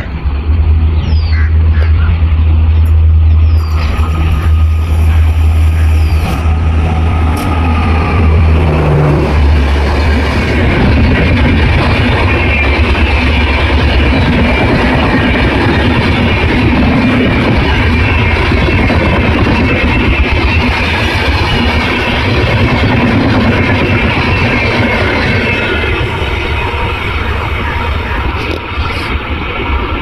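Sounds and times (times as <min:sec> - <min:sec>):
train wheels rushing on rails: 0:00.0 - 0:30.0.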